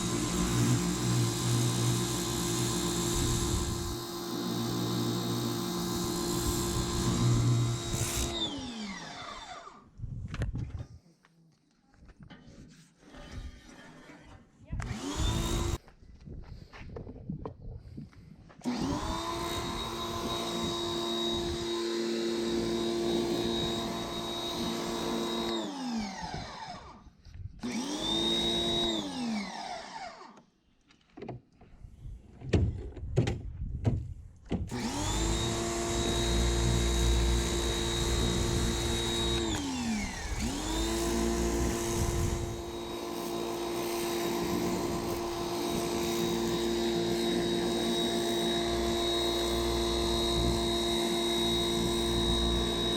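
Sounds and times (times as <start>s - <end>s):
pressure washer motor whining: 0.0s - 9.7s, 18.7s - 26.8s, 34.7s - 52.9s.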